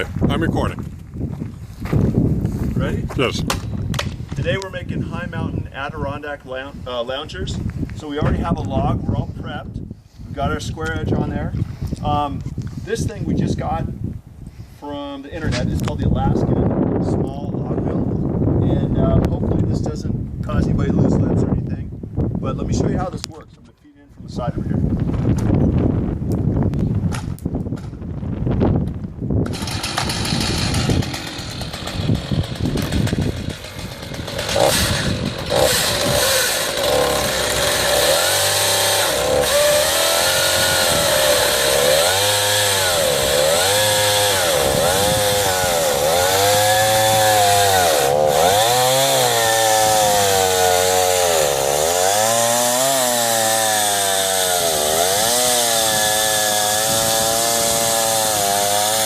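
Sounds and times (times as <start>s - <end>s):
chainsaw ripping through log: 29.4s - 59.0s.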